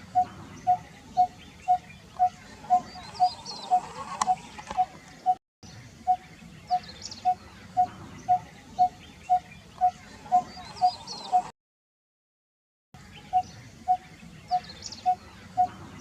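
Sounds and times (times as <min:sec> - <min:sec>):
bird calling hollow tuk notes: 0:00.0 - 0:05.4, 0:06.1 - 0:11.5, 0:13.1 - 0:16.0
small birds chirping: 0:00.0 - 0:11.5, 0:13.0 - 0:16.0.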